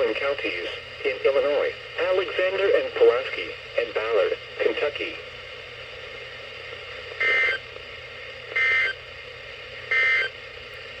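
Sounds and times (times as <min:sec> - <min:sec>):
radio hiss: 0:00.0 - 0:07.5.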